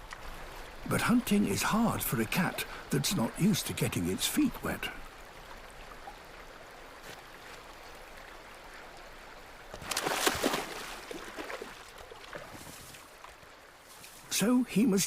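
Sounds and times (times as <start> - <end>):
river water running: 0.0 - 15.0
water splashing: 9.6 - 14.2.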